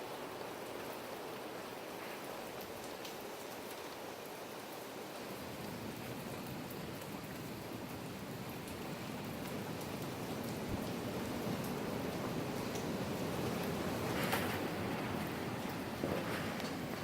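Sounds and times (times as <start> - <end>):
steady rain: 0.0 - 17.0
rain drop ticks: 2.0 - 4.4, 5.2 - 17.0
gusty wind: 10.5 - 17.0.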